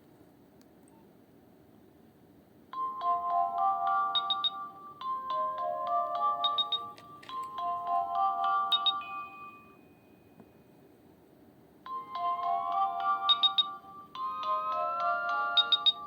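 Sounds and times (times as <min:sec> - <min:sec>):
mobile phone ringtone melody: 0:02.7 - 0:10.4, 0:11.9 - 0:16.0.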